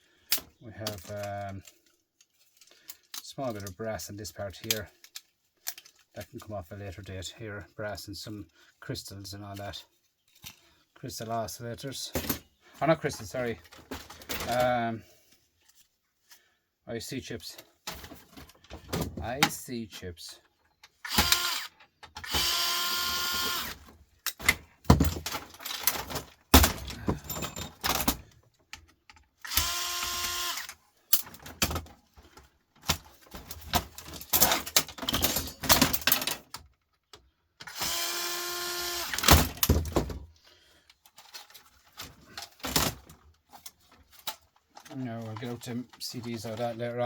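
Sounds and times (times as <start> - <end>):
metal and plastic parts rattling: 0.2 - 7.3, 9.5 - 14.9, 17.4 - 38.1, 38.8 - 47.0
electric screwdriver running: 21.1 - 23.8, 29.4 - 30.7, 37.7 - 39.2.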